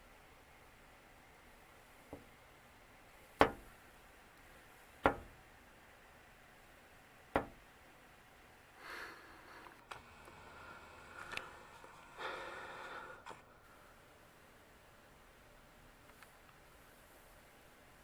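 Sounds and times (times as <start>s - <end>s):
sharp knocks: 3.4s - 3.7s, 5.0s - 5.4s, 7.4s - 7.7s.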